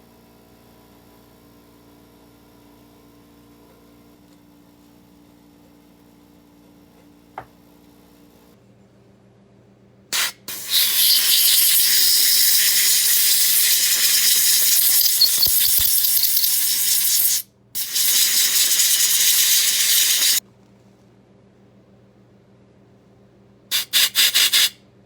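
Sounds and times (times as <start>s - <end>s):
pressurised spray hissing: 10.2s - 20.4s.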